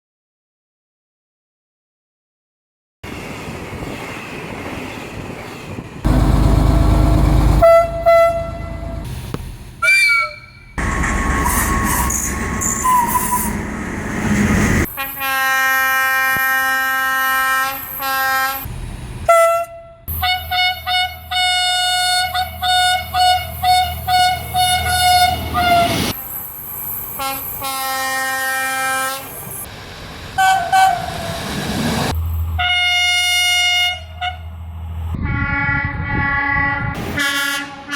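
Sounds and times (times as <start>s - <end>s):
train running: 3.1s - 37.9s
short train horn toots: 7.6s - 9.0s, 19.3s - 26.1s, 35.2s - 37.9s
train horn blasts: 7.6s - 9.0s, 14.9s - 18.7s, 19.3s - 26.2s, 27.2s - 29.3s, 32.6s - 34.5s, 35.2s - 37.9s.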